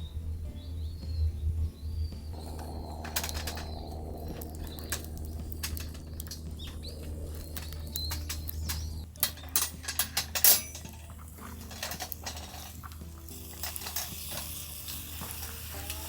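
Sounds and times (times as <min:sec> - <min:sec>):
bird chirps: 0:00.0 - 0:09.5.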